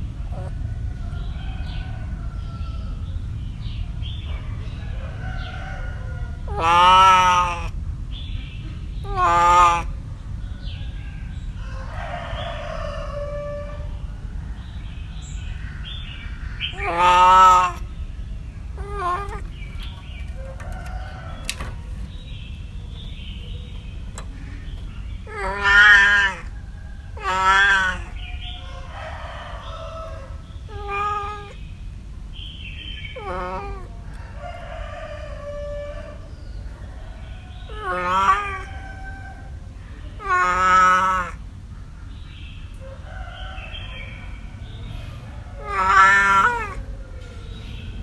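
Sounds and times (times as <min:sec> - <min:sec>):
cat meowing: 0:06.5 - 0:07.8, 0:09.0 - 0:09.9, 0:16.8 - 0:17.8, 0:18.8 - 0:19.9, 0:25.2 - 0:26.5, 0:27.2 - 0:28.2, 0:30.7 - 0:31.6, 0:33.1 - 0:34.0, 0:37.7 - 0:38.8, 0:40.2 - 0:41.4, 0:45.6 - 0:46.9.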